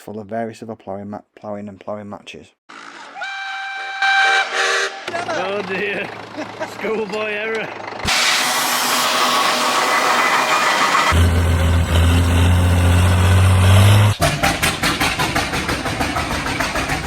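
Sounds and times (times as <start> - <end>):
tractor engine drone: 4.1 - 17.0
tractor engine chugging: 5.1 - 8.2, 14.2 - 17.0.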